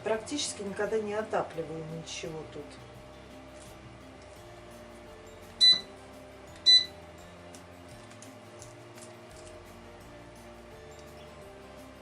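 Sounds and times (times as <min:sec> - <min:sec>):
faint background music: 0:00.0 - 0:12.0
short electronic beeps: 0:05.6 - 0:05.9, 0:06.6 - 0:06.9.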